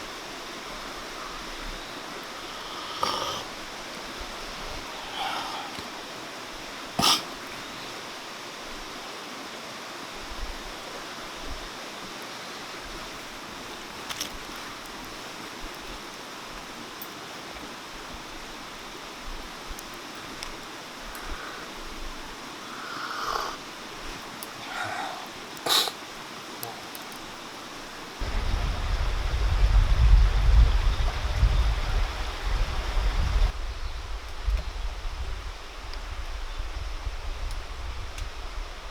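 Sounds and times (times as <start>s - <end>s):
mountain stream flowing: 0.0s - 33.5s
stream flowing: 18.6s - 33.5s
low rumble: 28.2s - 35.5s.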